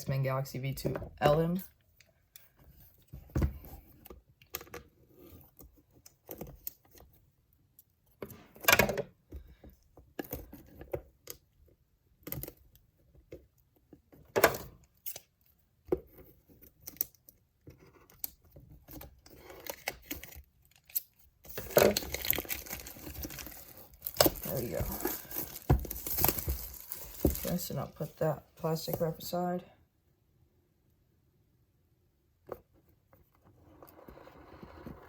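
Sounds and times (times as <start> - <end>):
plastic wrap tearing: 19.6 - 27.8
plastic wrap crinkling: 19.6 - 28.2.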